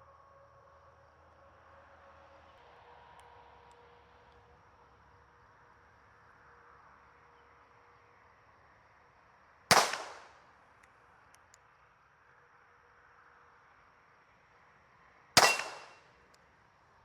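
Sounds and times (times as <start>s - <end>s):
revolver shot with echo: 9.7s - 10.3s, 15.4s - 16.0s.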